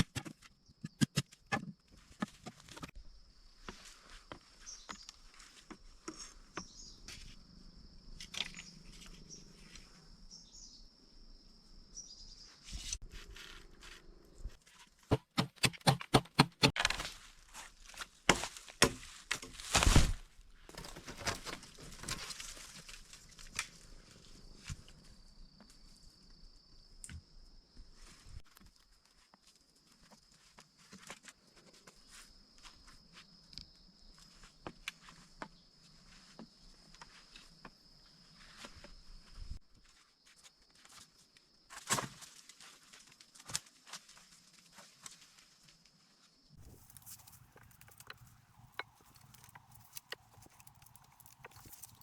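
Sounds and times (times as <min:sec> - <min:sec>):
plant material rustling and tearing: 0:16.8 - 0:20.3, 0:46.6 - 0:52.0
loud crunch: 0:46.6 - 0:52.0.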